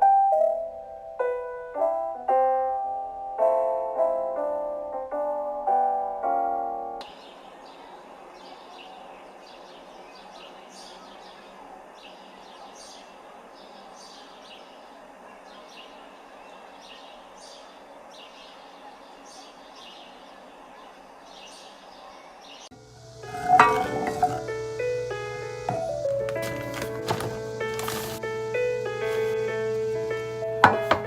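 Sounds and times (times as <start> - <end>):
small birds chirping: 7.0 - 30.9
steady background hiss: 7.0 - 31.0.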